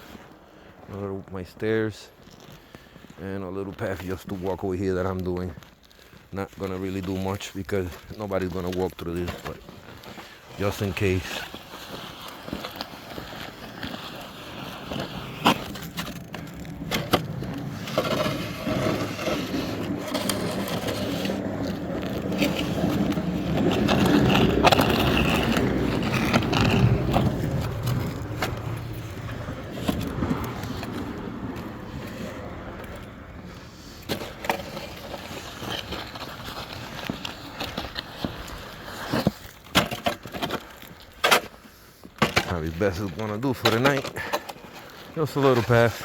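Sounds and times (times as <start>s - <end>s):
snow shovel scraping pavement: 0.0s - 46.0s
vehicle engine: 15.1s - 35.4s.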